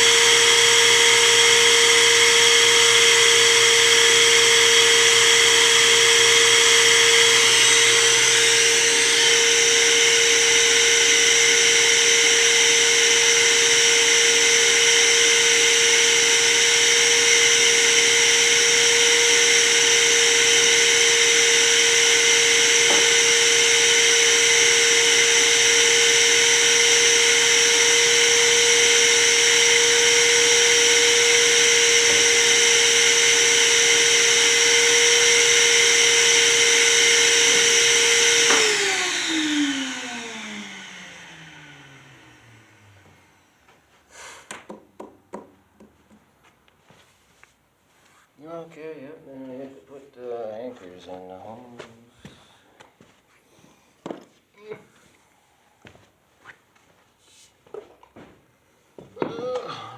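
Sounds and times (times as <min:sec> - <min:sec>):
electric motor running: 0:00.0 - 0:43.2.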